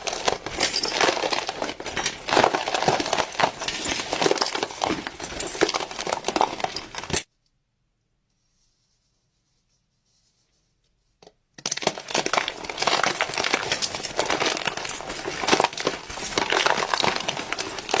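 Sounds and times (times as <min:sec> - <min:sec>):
crinkling and crackling: 0:00.0 - 0:07.3, 0:11.6 - 0:18.0.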